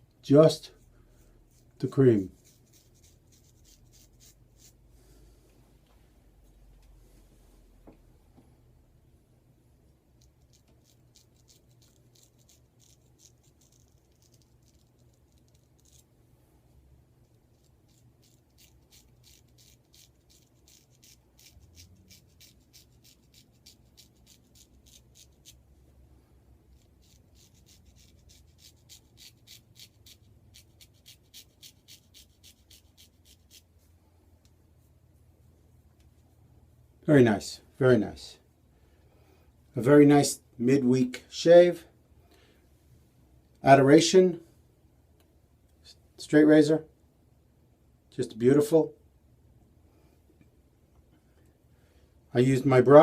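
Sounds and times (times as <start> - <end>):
razor scraping stubble: 1.5 - 4.8, 10.2 - 16.1, 17.2 - 25.6, 26.7 - 33.7.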